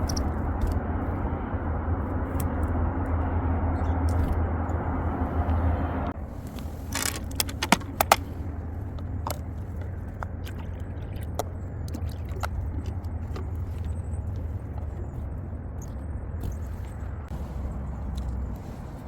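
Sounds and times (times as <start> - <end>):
steady low rumble: 0.0 - 19.0
sharp clicks and taps: 6.9 - 8.3.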